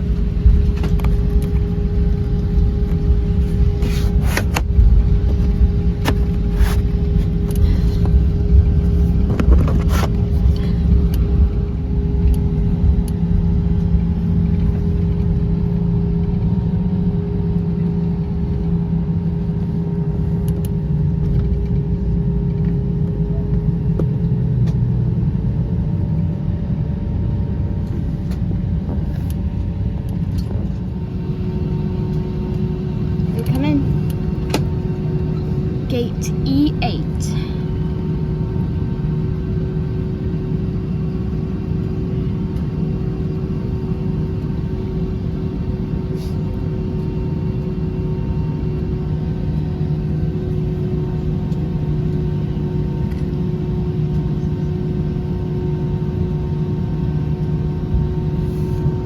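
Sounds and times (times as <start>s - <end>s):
low rumble: 0.0s - 45.9s
constant hum: 0.0s - 59.0s.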